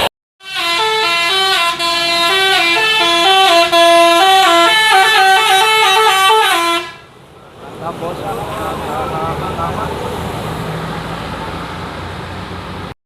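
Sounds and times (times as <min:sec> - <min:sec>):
musical bus horn melody: 0:00.0 - 0:07.2.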